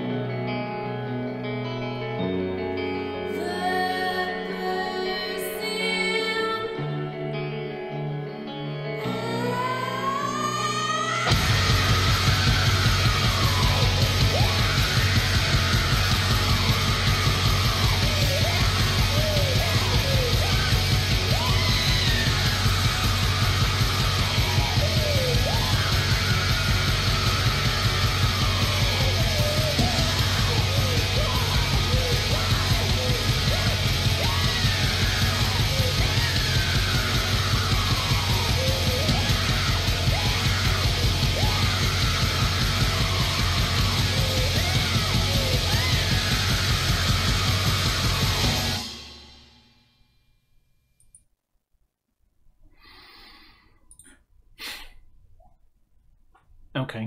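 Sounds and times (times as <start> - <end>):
distorted guitars: 0.0 - 49.8
screamed vocals: 9.0 - 49.3
fast driving drums: 11.3 - 49.6.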